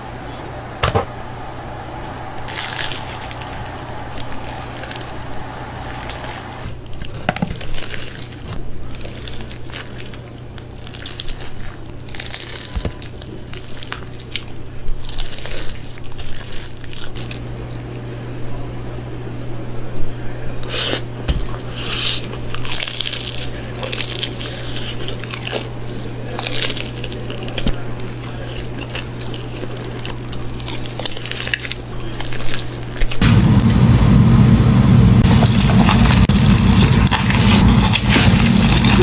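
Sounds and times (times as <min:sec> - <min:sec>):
wet squishy chewing: 0:02.5 - 0:17.4, 0:20.6 - 0:33.2, 0:35.2 - 0:39.0
steady low hum: 0:33.2 - 0:39.0.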